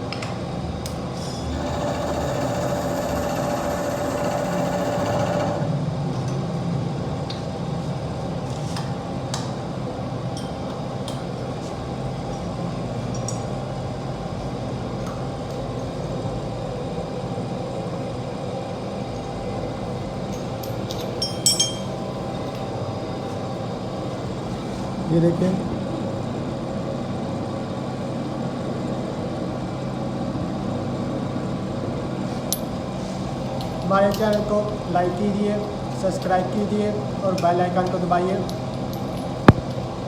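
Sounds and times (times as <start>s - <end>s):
low workshop hum: 0.0s - 40.0s
milling machine motor whine: 1.4s - 6.0s
sharp metallic clinks: 21.2s - 22.0s.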